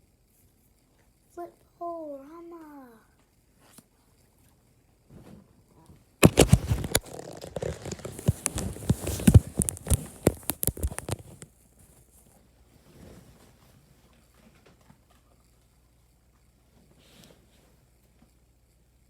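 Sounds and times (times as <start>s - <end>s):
book pages flipping: 6.2s - 11.5s.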